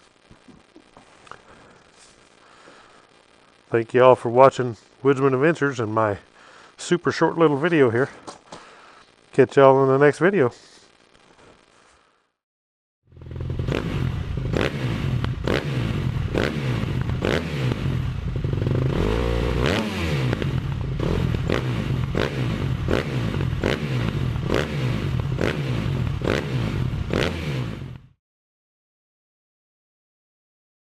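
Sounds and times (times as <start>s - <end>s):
motorcycle engine: 13.1s - 28.2s.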